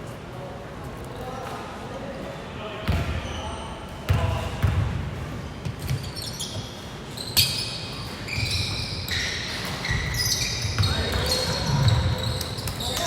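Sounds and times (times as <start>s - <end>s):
sneakers squeaking: 2.8s - 13.0s.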